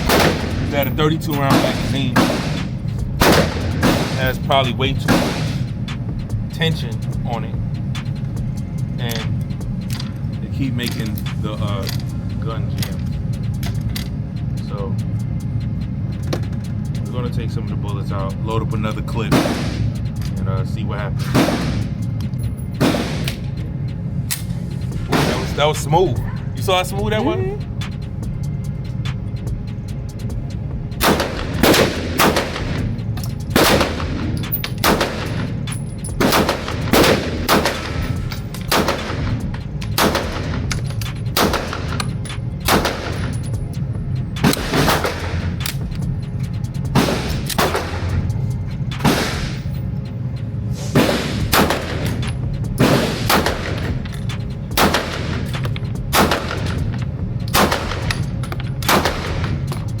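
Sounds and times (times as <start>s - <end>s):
steady low hum: 0.0s - 60.0s
handgun shots: 1.5s - 4.4s, 33.6s - 35.5s, 54.8s - 56.7s.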